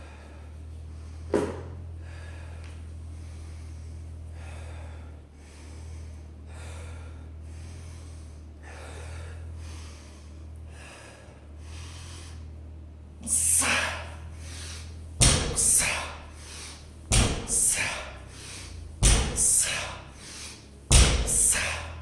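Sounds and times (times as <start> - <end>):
man breathing hard: 0.0 - 22.0
heavy thud: 1.3 - 1.8, 15.2 - 20.3, 20.9 - 22.0.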